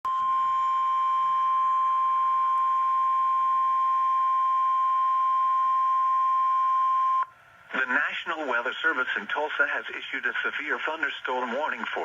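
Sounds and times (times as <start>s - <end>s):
steady single-pitch alarm tone: 0.1s - 7.3s.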